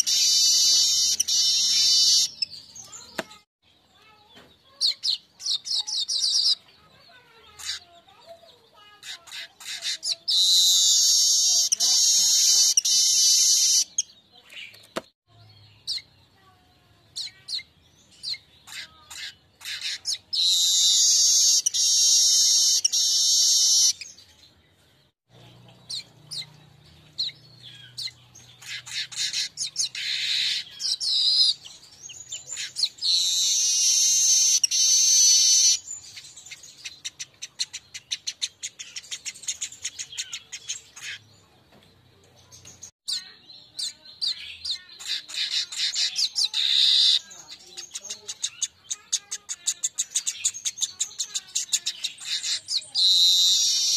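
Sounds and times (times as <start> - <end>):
weaver bird chattering song: 0.0 - 53.9
bird chips and clicks: 4.0 - 15.1, 44.4 - 53.9.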